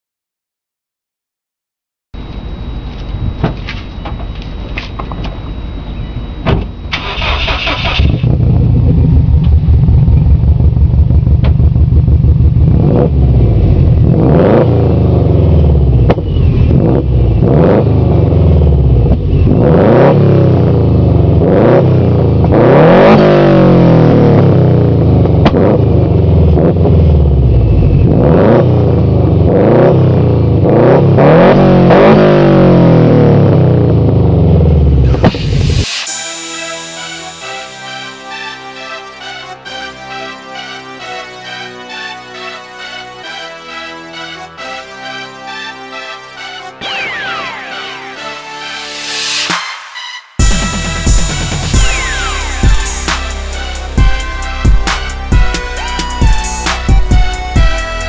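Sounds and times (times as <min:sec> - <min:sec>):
car engine idling and revving: 0:02.7 - 0:36.2, 0:50.4 - 0:58.0.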